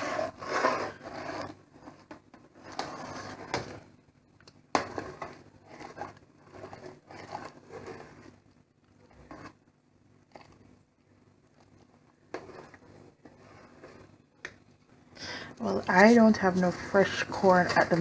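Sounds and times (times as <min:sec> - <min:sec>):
spoon scraping in cooking pot: 0:02.6 - 0:03.8, 0:04.8 - 0:08.3, 0:12.4 - 0:14.0, 0:15.3 - 0:18.0.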